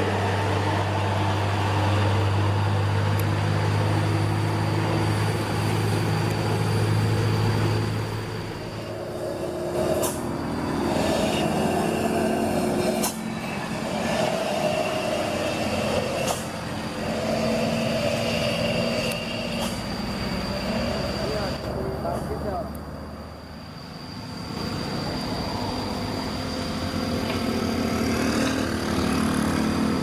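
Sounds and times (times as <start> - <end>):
small electric motors humming: 1.9 - 22.7.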